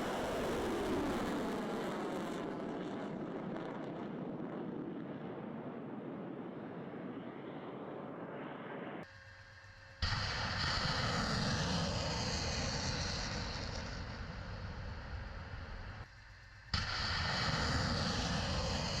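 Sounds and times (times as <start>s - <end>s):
outdoor rushing noise: 10.0s - 19.0s.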